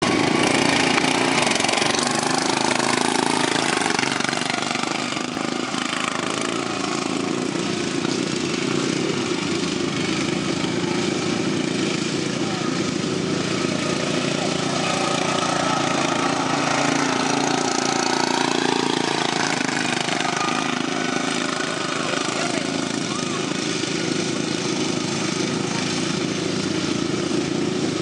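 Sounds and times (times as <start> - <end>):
lawn mower engines running: 0.0 - 28.0.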